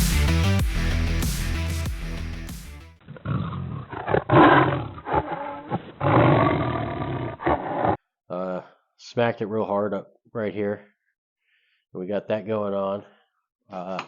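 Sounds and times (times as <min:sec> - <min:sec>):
electronic music: 0:00.0 - 0:03.0
big cat roar: 0:03.1 - 0:08.0.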